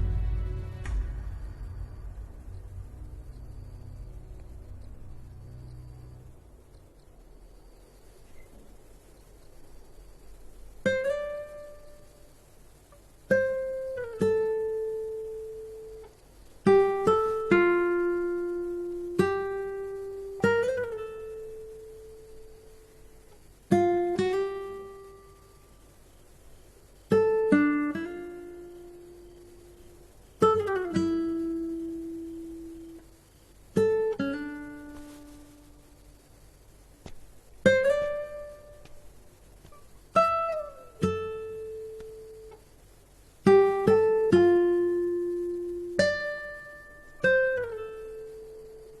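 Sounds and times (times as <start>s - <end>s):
plucked string instrument notes: 0.0s - 5.5s.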